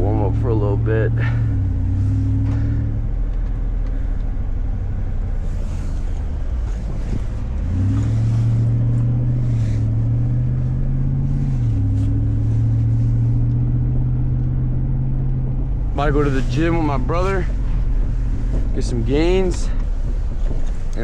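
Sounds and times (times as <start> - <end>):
engine exhaust drone: 0.0 - 21.0
wind noise: 5.2 - 10.7, 14.1 - 21.0.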